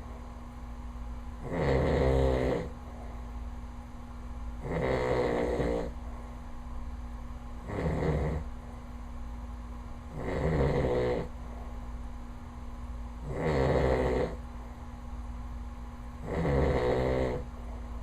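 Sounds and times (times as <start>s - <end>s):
man snoring loudly: 1.4s - 2.7s, 4.6s - 5.9s, 7.7s - 8.4s, 10.2s - 11.3s, 13.3s - 14.4s, 16.2s - 17.5s.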